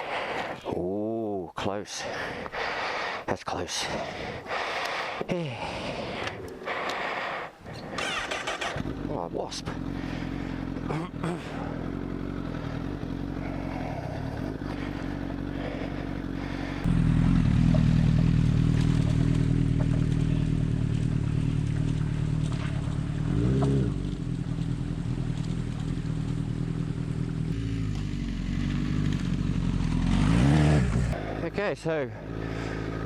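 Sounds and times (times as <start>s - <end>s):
motorcycle engine idling: 6.7s - 33.0s.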